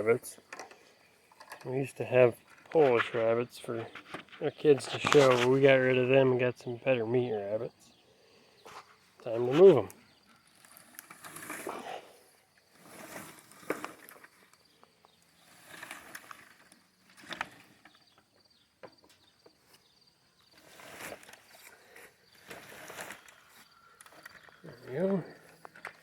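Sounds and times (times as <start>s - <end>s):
wire cage dragged across grass: 10.4s - 14.5s, 15.3s - 17.9s, 20.4s - 23.7s.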